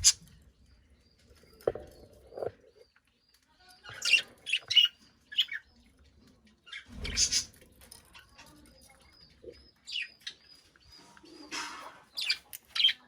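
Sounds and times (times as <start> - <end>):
budgerigar chirping: 0.0 - 0.2.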